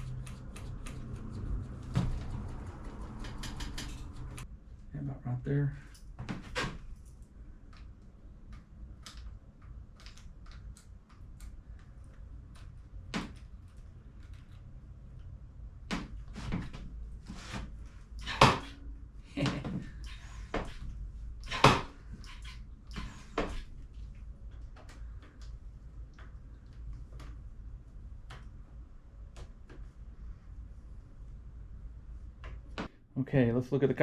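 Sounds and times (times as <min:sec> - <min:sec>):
bike parts and tools clicking: 0:00.0 - 0:04.5.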